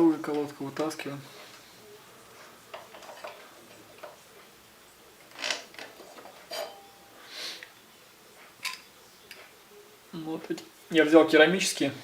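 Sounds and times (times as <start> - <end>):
metallic scrapes and clinks: 5.4 - 7.0.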